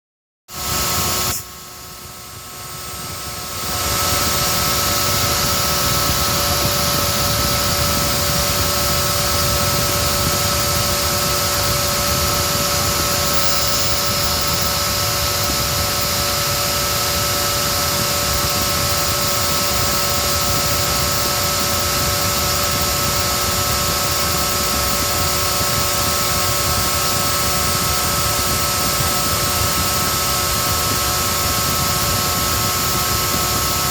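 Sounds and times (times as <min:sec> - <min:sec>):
milling machine hissing and whining: 0:00.6 - 0:33.9.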